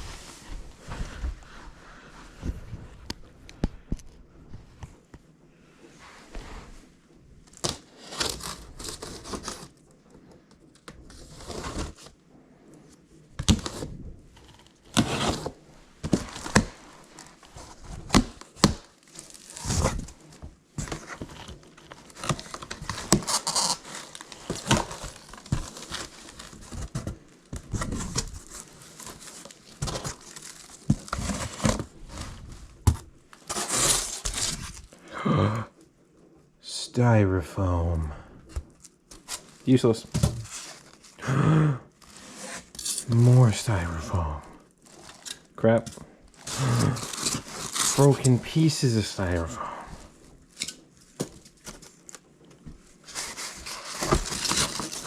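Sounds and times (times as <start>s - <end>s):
cardboard and packing crinkling: 7.4s - 9.8s, 10.6s - 12.2s, 13.4s - 35.0s, 38.4s - 41.2s, 41.9s - 55.0s
packing tape tearing: 7.5s - 9.7s, 20.8s - 27.1s, 33.4s - 34.8s, 46.3s - 48.3s, 53.1s - 55.0s.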